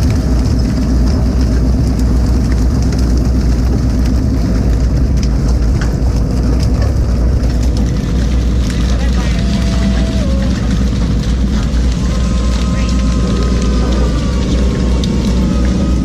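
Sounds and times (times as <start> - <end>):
faint clicks and knocks: 0.0 - 9.3
boat engine droning: 0.0 - 16.0.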